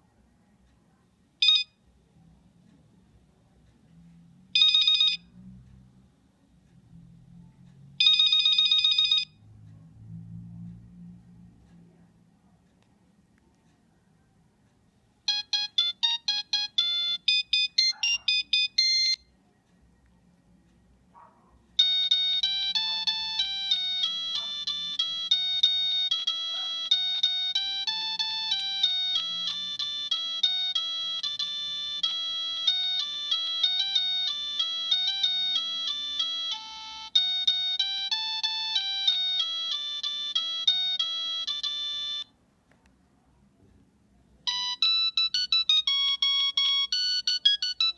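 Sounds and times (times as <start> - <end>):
mobile phone ringtone beeping: 1.4 - 1.8, 4.6 - 5.3, 8.0 - 9.4, 15.3 - 19.2, 21.8 - 42.3, 44.5 - 47.9.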